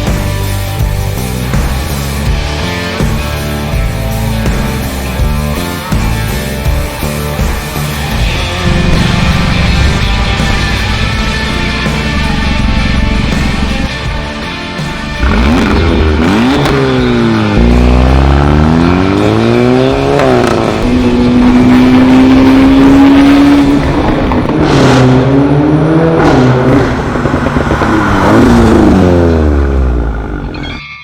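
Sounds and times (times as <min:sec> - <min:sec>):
car engine revving loudly: 0:08.0 - 0:13.9, 0:14.9 - 0:30.5.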